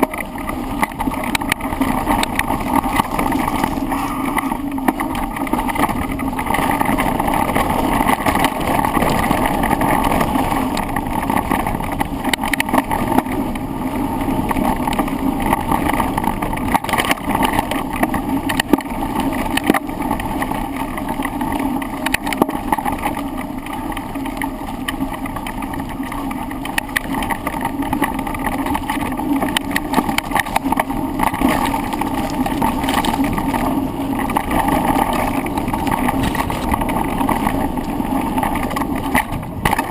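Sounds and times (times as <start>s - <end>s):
handlebar knocks and rattles: 0.0s - 13.6s, 14.2s - 39.9s
tyre and wind rumble: 0.0s - 39.9s.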